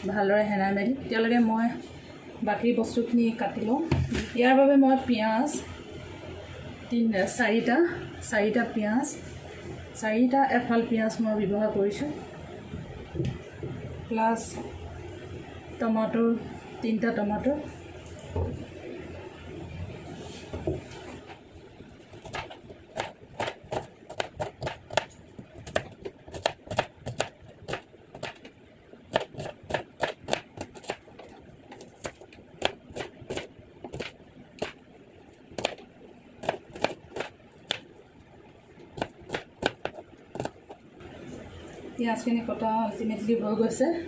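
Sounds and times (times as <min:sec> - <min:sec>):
knife chopping on cutting board: 0:22.2 - 0:28.4, 0:36.4 - 0:37.8, 0:39.0 - 0:40.6.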